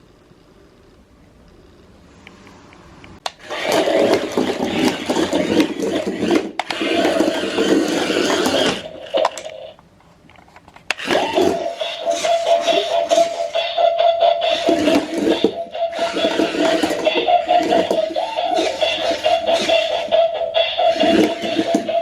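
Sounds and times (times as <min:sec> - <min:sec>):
toy electronic sound effects: 0:11.0 - 0:22.0.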